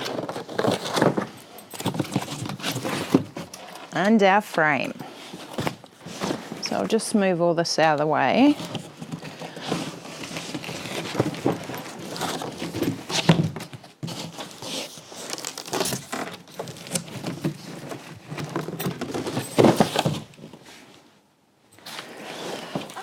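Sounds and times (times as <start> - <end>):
packing material crinkling: 14.0 - 20.2.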